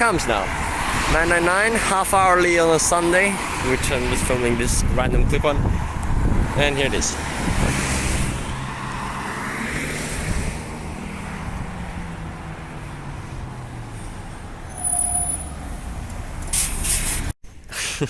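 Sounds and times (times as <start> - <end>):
bus driving past: 7.4 - 17.3.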